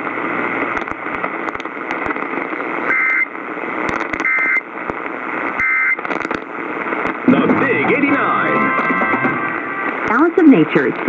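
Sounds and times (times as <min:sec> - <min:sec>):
radio static hiss with crackles: 0:00.0 - 0:11.0
buzzy two-tone data chirps: 0:02.9 - 0:03.3, 0:04.2 - 0:04.6, 0:05.6 - 0:06.1.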